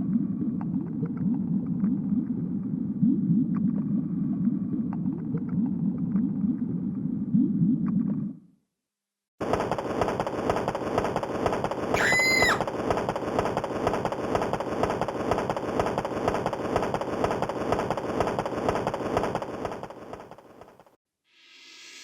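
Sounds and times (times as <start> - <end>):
whistle-like tone: 12.0 - 12.6.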